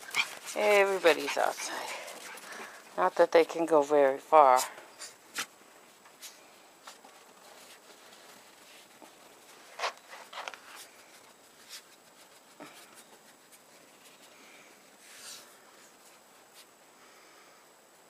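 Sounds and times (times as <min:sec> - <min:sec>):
scratchy rustles and crunches: 0:04.6 - 0:16.7.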